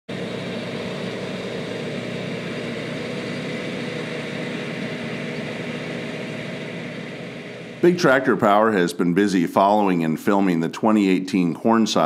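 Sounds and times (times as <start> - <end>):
heavy farm machinery running: 0.1 - 12.0.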